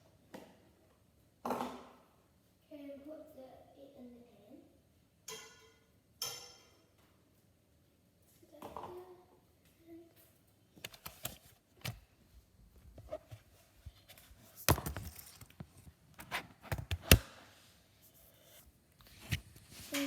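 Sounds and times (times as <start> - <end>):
kitchen items knocking and clinking: 14.6 - 15.8.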